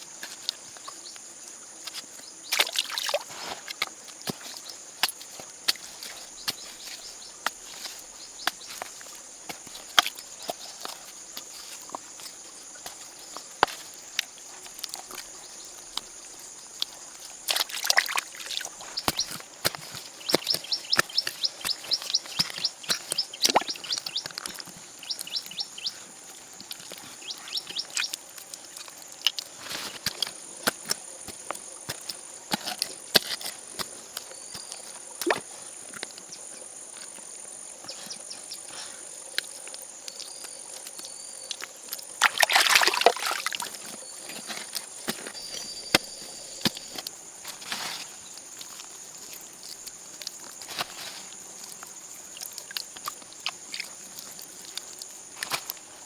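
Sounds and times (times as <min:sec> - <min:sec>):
high insect chirring: 0:06.2 - 0:29.5, 0:37.9 - 0:47.5.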